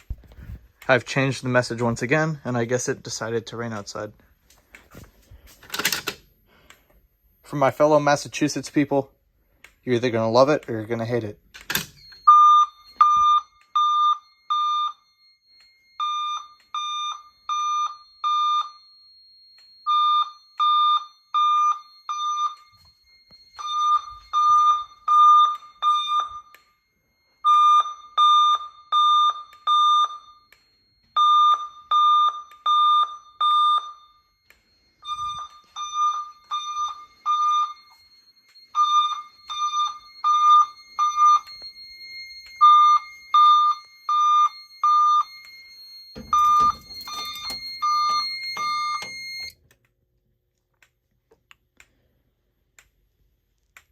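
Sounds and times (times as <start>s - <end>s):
fire alarm pulsed beeps: 0.0s - 49.6s.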